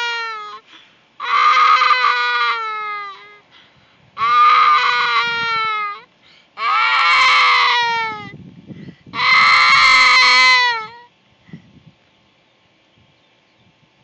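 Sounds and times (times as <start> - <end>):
young child crying: 0.0 - 3.5, 4.2 - 8.3.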